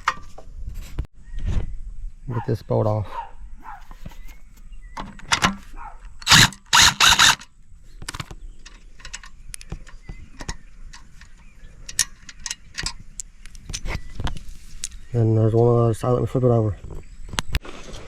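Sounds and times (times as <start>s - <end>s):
loud rattling bursts: 6.2s - 7.4s.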